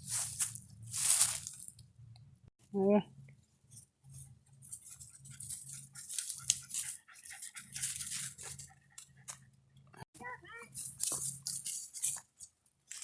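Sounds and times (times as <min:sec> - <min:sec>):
dry leaves rustling and crackling: 0:00.0 - 0:01.8, 0:04.6 - 0:08.7, 0:10.6 - 0:13.0.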